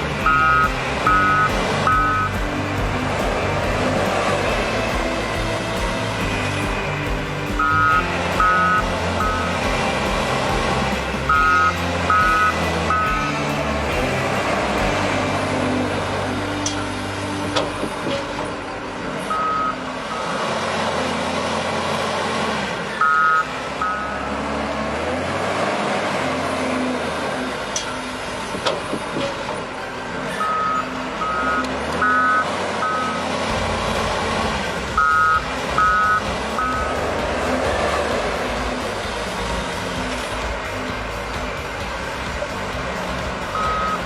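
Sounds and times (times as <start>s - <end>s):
truck engine running: 0.0s - 44.0s
reversing alarm beeps: 0.2s - 2.4s, 7.6s - 9.6s, 19.3s - 20.4s, 23.0s - 24.3s, 30.4s - 33.3s, 35.0s - 36.9s, 43.6s - 44.0s.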